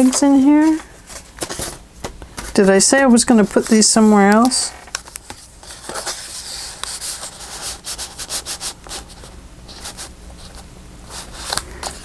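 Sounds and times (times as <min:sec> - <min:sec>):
paper and card rustling: 0:00.0 - 0:12.0.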